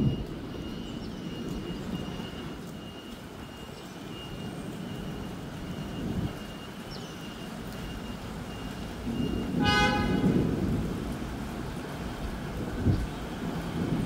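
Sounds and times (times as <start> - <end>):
thunder rumbling: 0.0 - 6.8, 7.5 - 14.0
short horn toot: 9.6 - 10.3.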